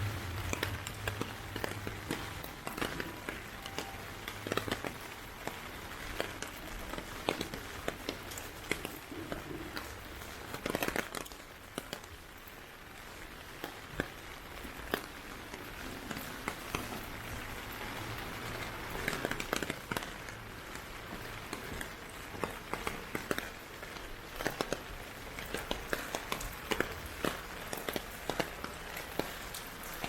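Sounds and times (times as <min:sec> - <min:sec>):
heavy rain hissing: 0:00.0 - 0:07.2.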